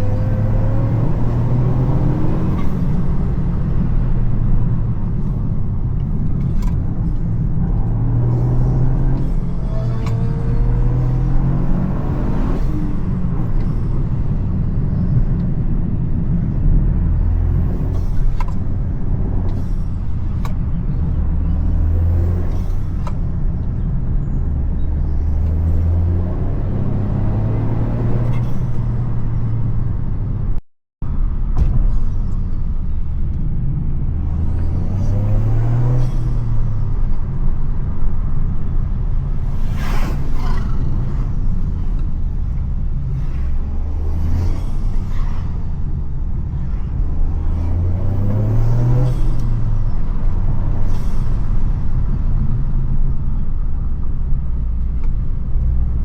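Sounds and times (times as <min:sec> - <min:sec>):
car engine revving under load: 0:32.2 - 0:56.0.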